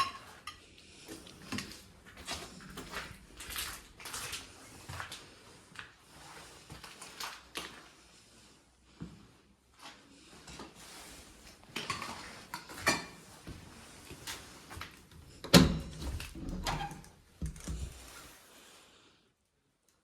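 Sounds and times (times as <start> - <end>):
footsteps in a room: 0.0 - 18.6.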